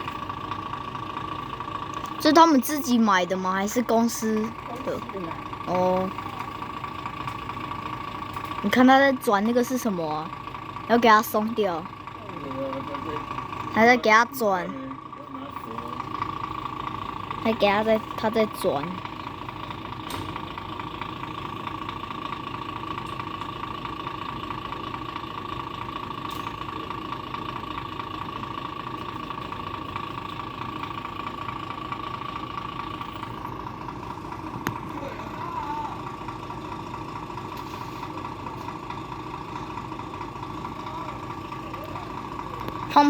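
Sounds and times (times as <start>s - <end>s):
diesel engine idling: 0.0s - 43.0s.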